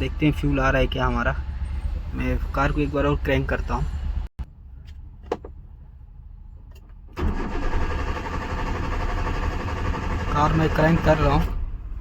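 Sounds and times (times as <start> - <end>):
starter cranking engine: 7.2 - 11.5.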